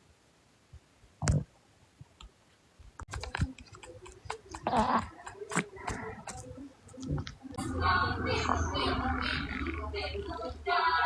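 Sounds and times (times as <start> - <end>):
stomach gurgling: 3.1 - 11.0.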